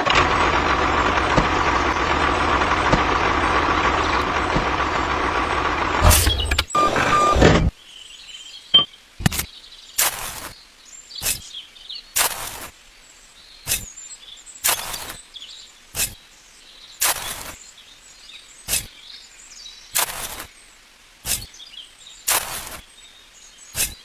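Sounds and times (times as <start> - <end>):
steady machine noise: 0.0 - 7.7.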